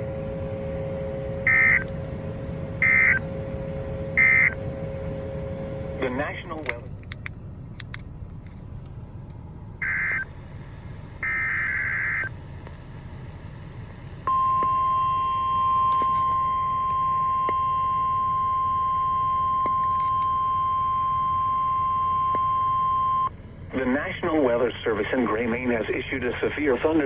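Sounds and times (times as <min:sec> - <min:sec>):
steady warning alarm tone: 0:00.0 - 0:06.2, 0:09.8 - 0:10.3, 0:11.2 - 0:12.3, 0:14.3 - 0:23.3.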